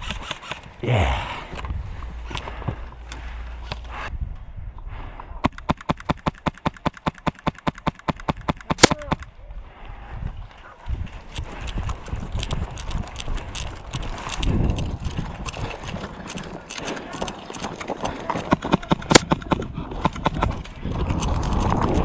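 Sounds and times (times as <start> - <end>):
airsoft rifle rapid firing: 5.4 - 9.2, 18.5 - 20.5.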